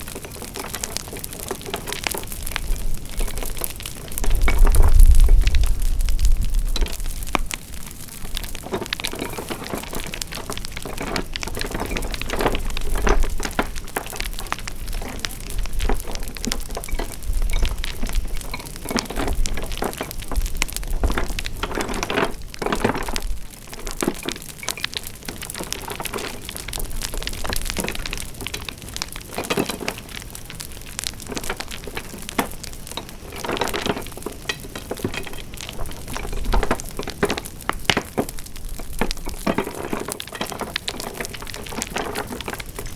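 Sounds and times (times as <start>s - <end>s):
wood fire crackling: 0.0s - 42.9s.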